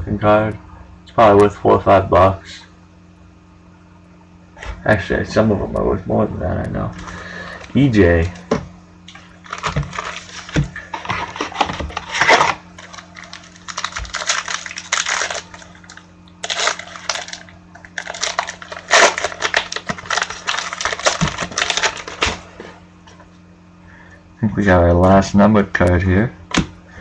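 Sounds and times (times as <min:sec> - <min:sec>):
plastic packaging crinkling: 0:09.1 - 0:22.6.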